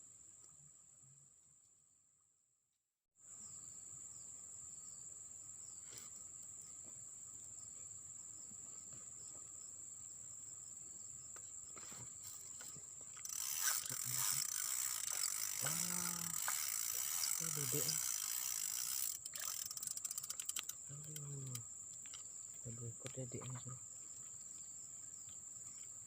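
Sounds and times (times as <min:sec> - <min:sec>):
insects droning: 0:03.2 - 0:26.0
rustling rattling noise: 0:12.2 - 0:22.3.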